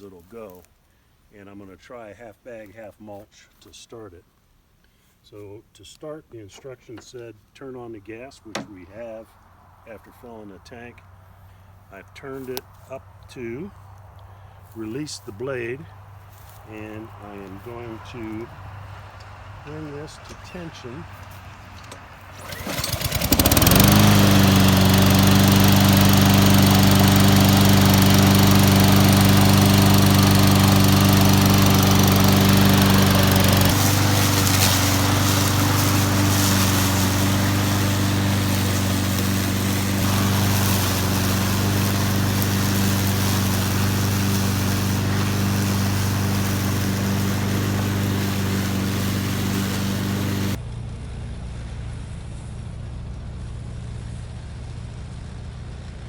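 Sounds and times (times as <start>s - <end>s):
lawn mower engine running: 8.5s - 8.9s, 21.7s - 50.6s.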